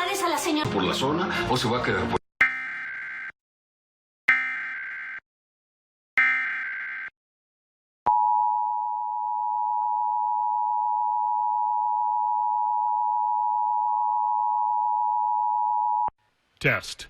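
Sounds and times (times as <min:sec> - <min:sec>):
two-tone alert alarm: 0:02.4 - 0:03.4, 0:04.3 - 0:05.2, 0:06.2 - 0:07.1.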